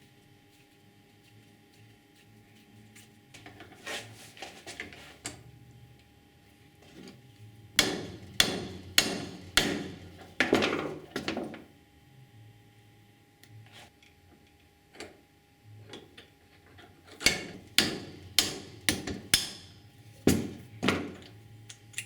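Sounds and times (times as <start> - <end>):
hammer strikes: 7.8 - 10.6, 17.2 - 20.6.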